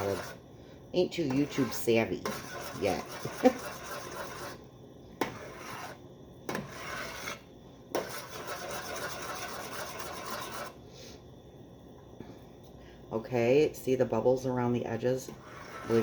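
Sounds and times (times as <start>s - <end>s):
utensil scraping saucepan bottom: 0.0s - 0.4s, 1.1s - 4.6s, 5.2s - 10.8s, 14.9s - 16.0s.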